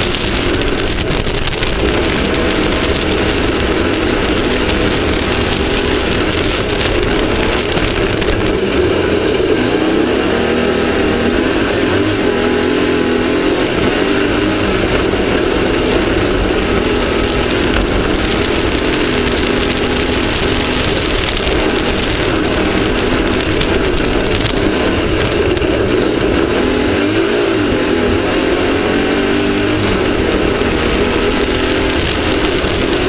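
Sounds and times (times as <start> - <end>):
race vehicle engine running hard: 0.0 - 33.0
terrain noise: 0.0 - 33.0
wind rush: 0.0 - 33.0.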